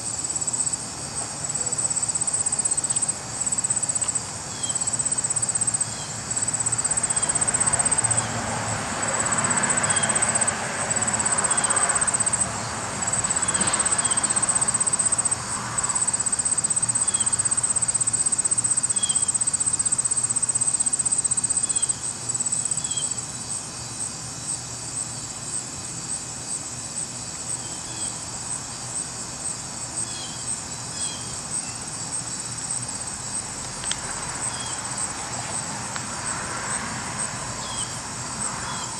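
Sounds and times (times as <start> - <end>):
insects trilling: 0.0 - 38.9.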